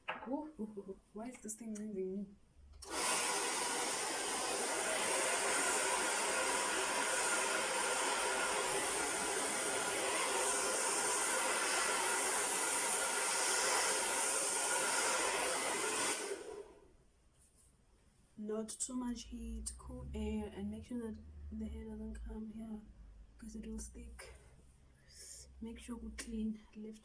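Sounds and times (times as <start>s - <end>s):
hair dryer blowing: 2.8s - 16.8s.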